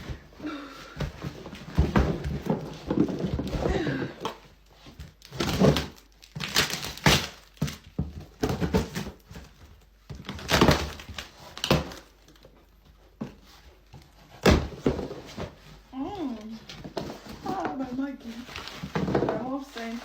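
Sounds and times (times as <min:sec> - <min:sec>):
packaging rustling and ripping: 0:04.8 - 0:12.5, 0:18.3 - 0:20.0.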